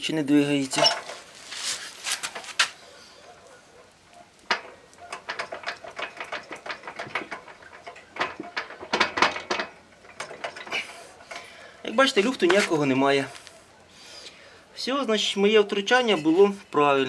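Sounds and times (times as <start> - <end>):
metallic clicks and knocks: 4.1 - 13.6.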